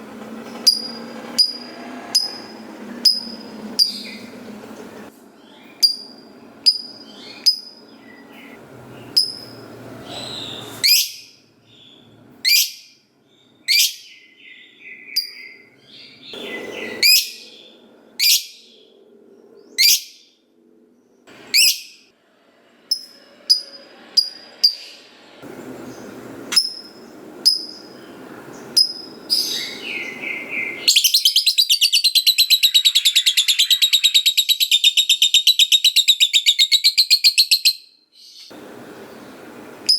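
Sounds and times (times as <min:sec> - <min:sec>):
lovebird rattling chatter: 0:00.6 - 0:04.1
lovebird chirping: 0:00.6 - 0:04.4, 0:05.4 - 0:18.8, 0:21.5 - 0:22.0, 0:25.7 - 0:38.5.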